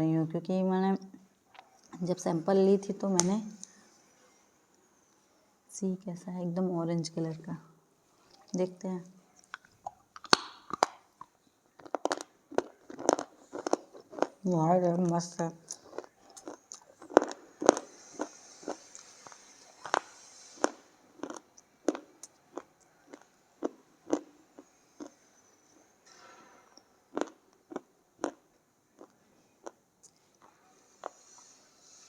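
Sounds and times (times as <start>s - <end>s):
crunching dry clay between teeth: 9.4s - 25.2s.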